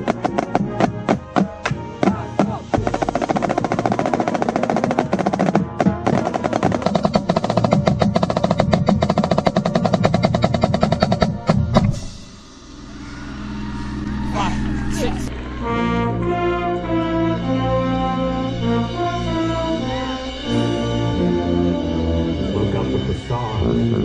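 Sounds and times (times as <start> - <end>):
rapid drum strokes: 0.0 - 15.3
sustained band chords: 11.3 - 24.0.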